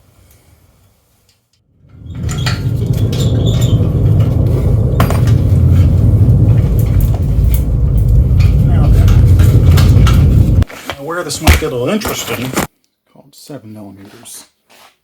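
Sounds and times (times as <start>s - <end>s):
steady low rumble: 1.7s - 10.7s.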